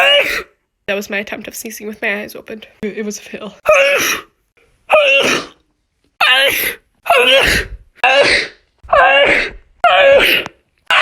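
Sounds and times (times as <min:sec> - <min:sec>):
person sneezing: 0:03.7 - 0:04.3, 0:05.0 - 0:05.6, 0:06.3 - 0:10.6.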